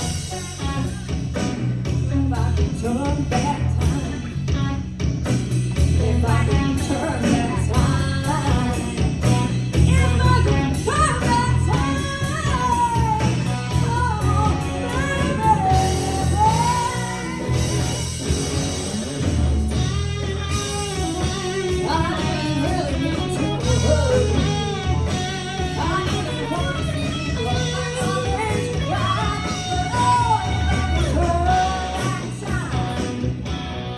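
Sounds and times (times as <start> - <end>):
live rock band playing: 0.0 - 33.9.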